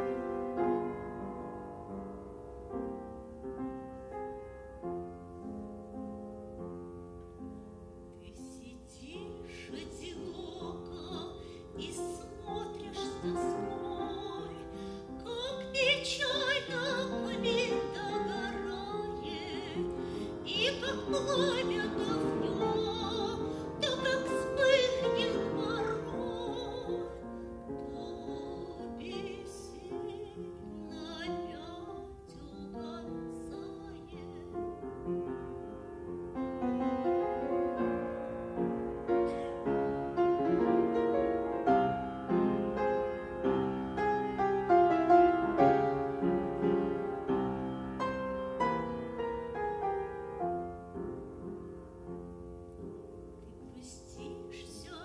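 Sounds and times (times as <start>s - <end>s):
piano accompaniment: 0.0s - 55.0s
operatic singing with vibrato: 8.2s - 34.8s, 53.4s - 55.0s.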